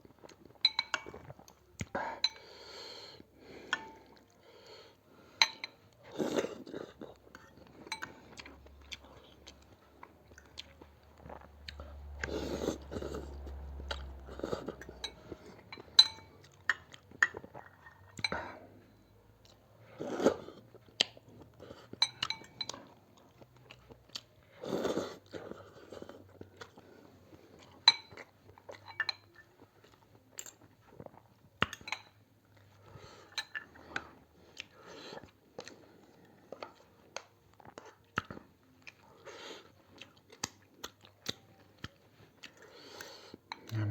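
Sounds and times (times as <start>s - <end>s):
person chewing: 0.0s - 4.9s, 5.6s - 31.9s, 32.5s - 43.9s
person slurping soup: 12.2s - 15.7s, 42.8s - 43.9s.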